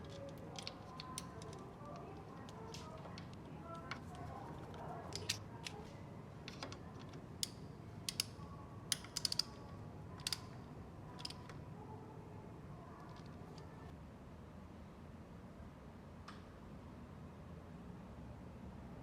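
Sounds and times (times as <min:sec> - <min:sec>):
clicks and taps on metal parts: 0:00.0 - 0:05.8, 0:06.5 - 0:10.6, 0:11.2 - 0:11.6.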